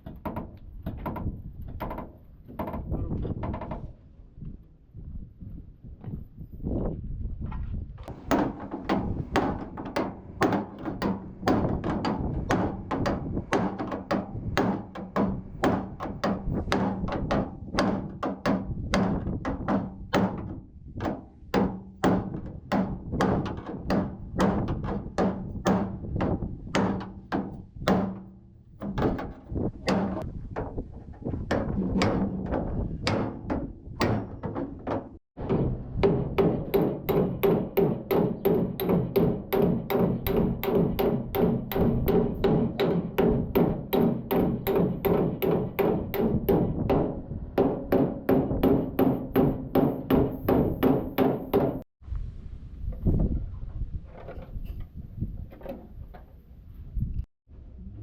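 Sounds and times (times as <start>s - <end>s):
hammer blows: 31.4s - 51.8s.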